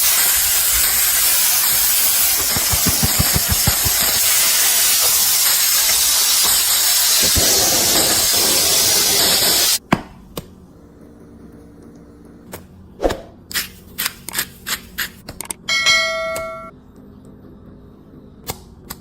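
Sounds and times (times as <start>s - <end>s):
loud steady hiss: 0.0s - 9.8s
utensils tapping and clicking: 1.9s - 5.2s
ringing tone: 15.7s - 16.7s.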